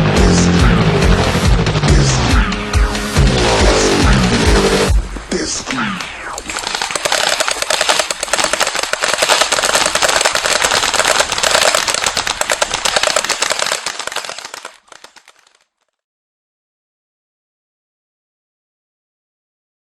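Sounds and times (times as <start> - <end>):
rapid automatic gunfire: 6.6 - 15.6.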